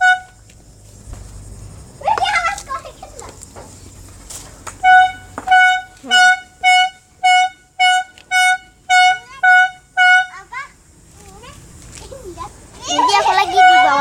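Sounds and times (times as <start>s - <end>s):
electronic horn beeping: 0.0s - 0.4s, 4.8s - 10.4s, 13.0s - 14.0s.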